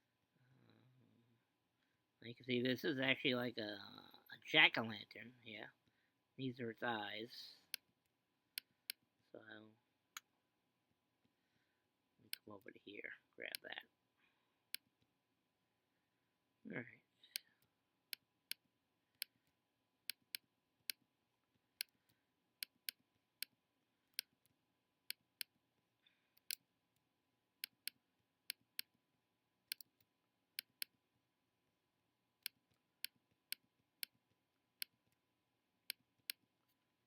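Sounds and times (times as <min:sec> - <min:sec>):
computer mouse clicking: 0:29.7 - 0:30.9.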